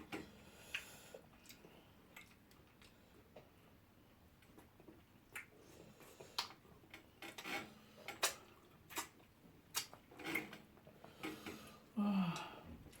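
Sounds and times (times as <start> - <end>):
eating clicks and smacks: 0.6 - 3.6, 4.4 - 10.6.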